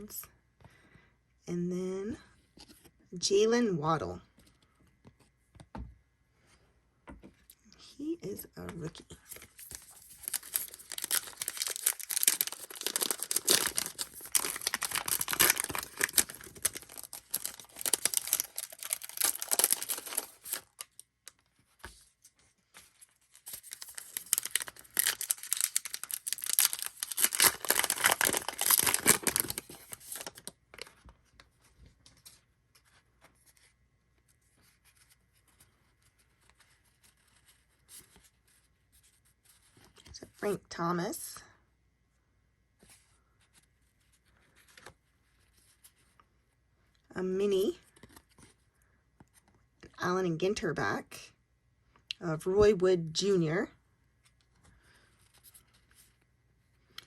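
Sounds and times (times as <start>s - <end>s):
faint card handling: 8.7s - 40.2s
wrappers torn and crinkled: 9.5s - 21.0s, 23.3s - 30.6s.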